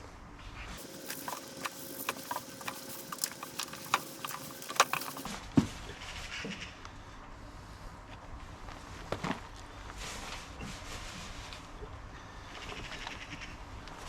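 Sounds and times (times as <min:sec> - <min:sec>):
soil crackling and clicking: 0:00.8 - 0:05.3.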